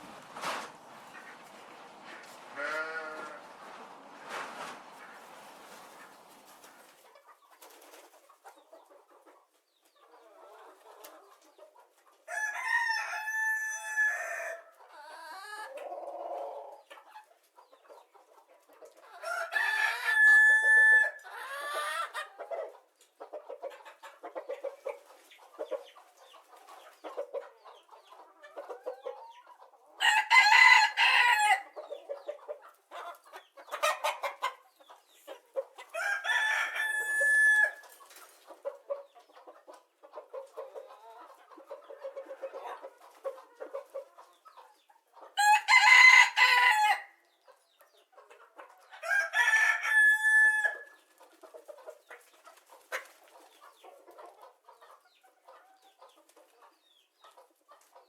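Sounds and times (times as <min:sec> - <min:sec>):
chickens clucking: 0:00.0 - 0:58.0
rooster crowing: 0:12.3 - 0:14.6, 0:19.2 - 0:21.2, 0:30.0 - 0:31.6, 0:36.0 - 0:37.8, 0:45.4 - 0:47.1, 0:49.0 - 0:50.9.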